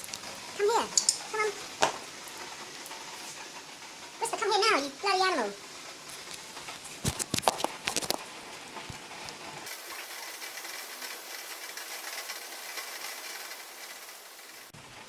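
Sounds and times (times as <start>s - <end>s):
sharp clicks and knocks: 0.0s - 3.6s, 6.1s - 9.7s
rain falling: 0.0s - 15.0s.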